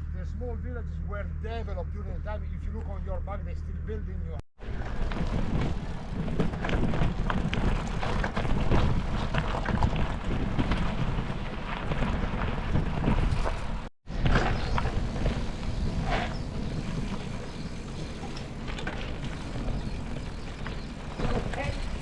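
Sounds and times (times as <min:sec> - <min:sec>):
wind buffeting microphone: 0:04.6 - 0:22.0.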